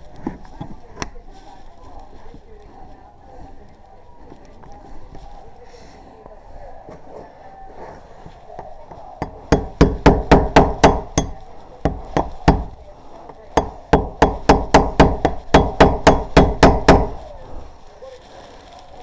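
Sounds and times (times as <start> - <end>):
rapid sharp knocks: 9.2 - 12.8, 13.6 - 17.2.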